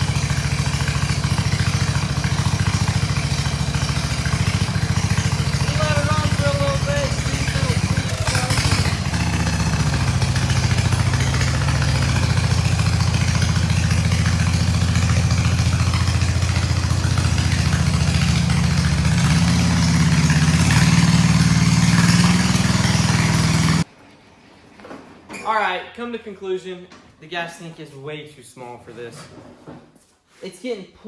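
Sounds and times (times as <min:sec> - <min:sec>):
riding lawnmower engine running: 0:00.0 - 0:24.0.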